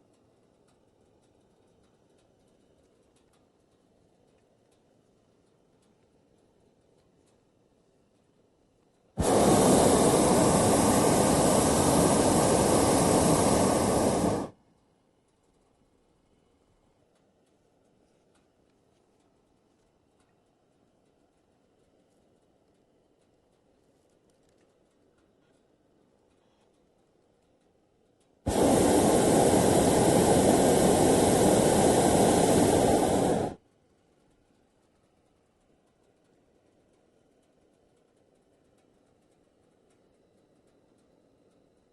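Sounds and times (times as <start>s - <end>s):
balloon rushing hiss: 9.2s - 14.5s, 28.5s - 33.6s.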